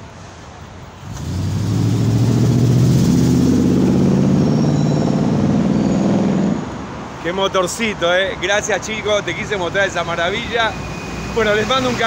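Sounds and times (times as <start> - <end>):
car engine revving: 1.0 - 6.8.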